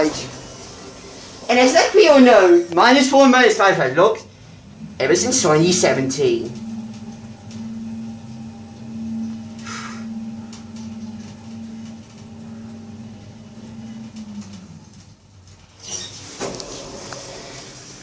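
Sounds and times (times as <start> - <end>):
lift drive hum: 2.8 - 15.8.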